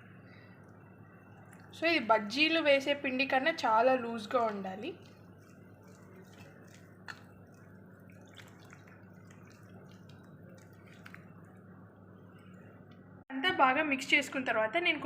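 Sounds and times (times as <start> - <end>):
low steady hum: 0.0 - 15.0
batter being stirred: 1.0 - 12.9.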